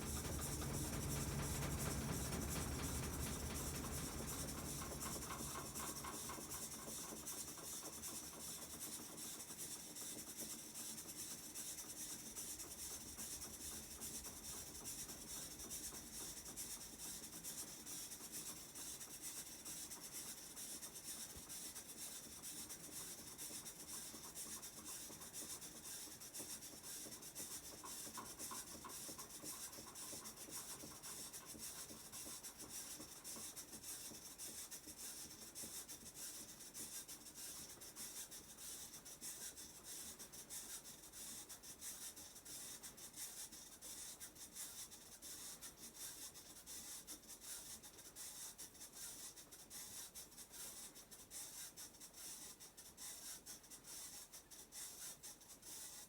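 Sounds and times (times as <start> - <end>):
washing machine spinning: 0.0 - 7.2.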